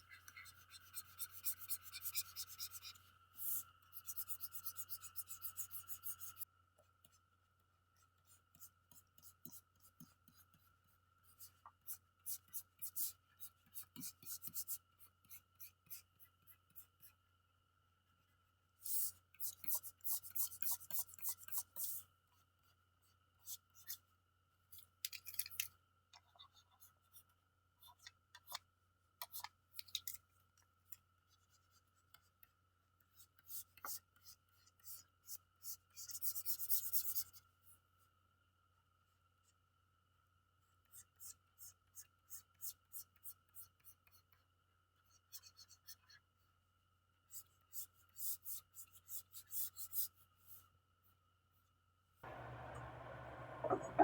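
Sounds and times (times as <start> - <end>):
steady low hum: 52.2 - 54.0.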